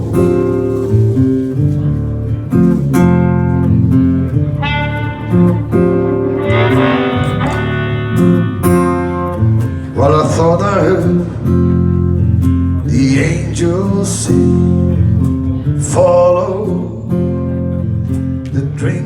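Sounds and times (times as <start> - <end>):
blues guitars playing: 0.0 - 18.4.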